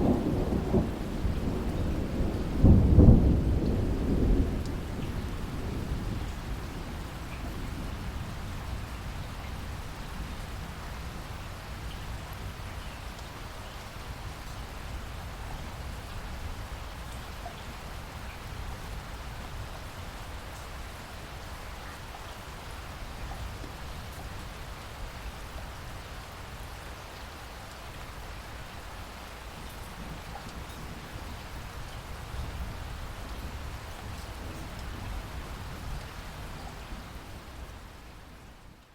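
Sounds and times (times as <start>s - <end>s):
thunder rumble: 0.0s - 8.8s
heavy rain falling: 0.0s - 38.9s
rain drop ticks: 2.9s - 5.4s, 12.8s - 13.8s, 29.6s - 32.1s, 33.2s - 35.2s.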